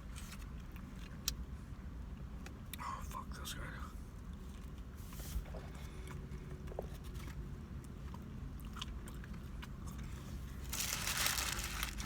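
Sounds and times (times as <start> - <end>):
person chewing food: 7.2 - 10.6
loud rustle: 10.6 - 12.0.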